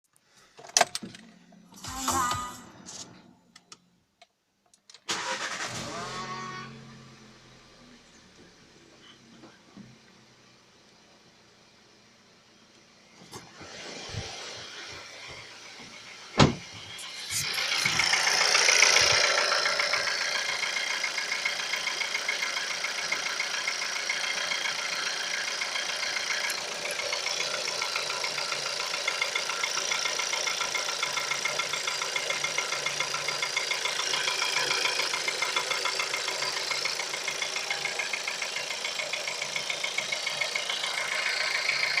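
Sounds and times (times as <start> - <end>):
car engine starting and idling: 0.2 - 42.0
sharp thump: 16.4 - 16.8
engine knocking: 17.5 - 42.0.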